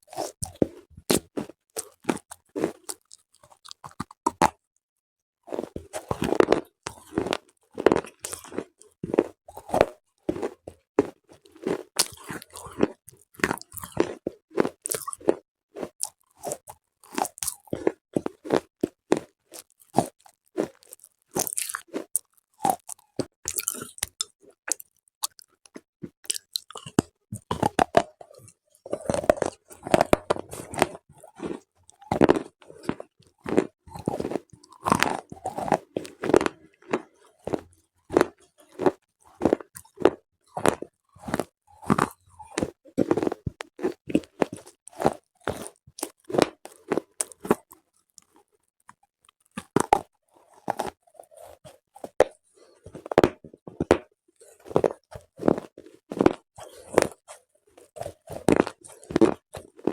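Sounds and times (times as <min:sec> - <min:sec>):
chewing with dry crunches: 0:00.0 - 0:04.6, 0:05.5 - 0:59.9.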